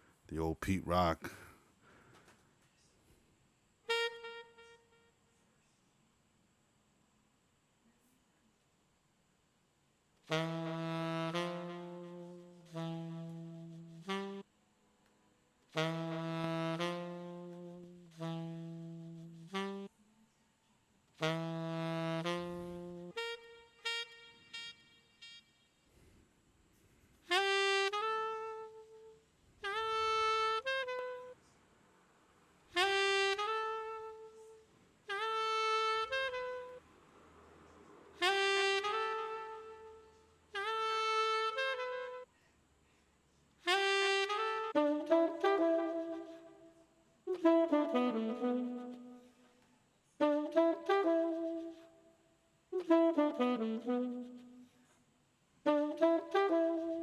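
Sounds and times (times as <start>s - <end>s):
saxophone-like horn phrases: 0.0s - 1.5s, 10.3s - 14.4s, 15.8s - 19.9s, 21.2s - 25.6s, 27.3s - 31.4s, 32.8s - 36.8s, 38.2s - 42.2s, 43.7s - 49.4s, 50.2s - 52.0s, 52.7s - 54.7s, 55.6s - 57.0s.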